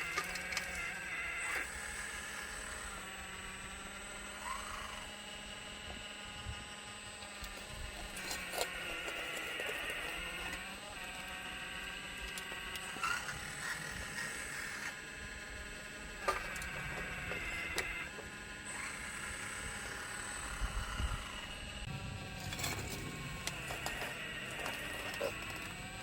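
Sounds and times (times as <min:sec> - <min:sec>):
constant hum: 0:00.0 - 0:26.0
model excavator motor whine: 0:00.0 - 0:26.0.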